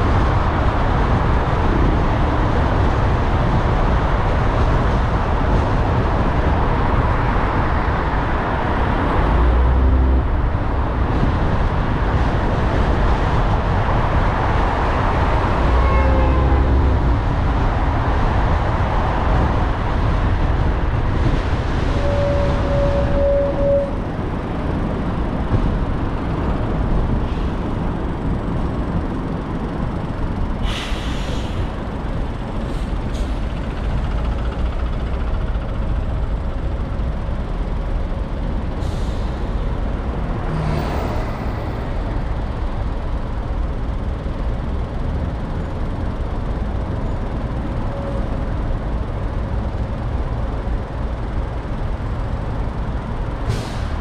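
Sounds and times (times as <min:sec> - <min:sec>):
car driving low rumble: 0:00.0 - 0:54.0
traffic hisses: 0:30.6 - 0:31.8.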